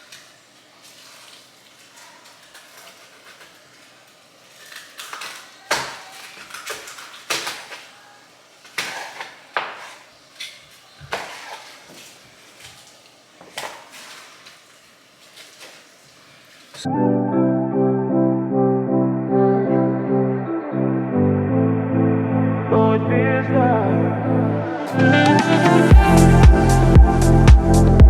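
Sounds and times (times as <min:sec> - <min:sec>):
handling and rustling: 0:00.0 - 0:16.9.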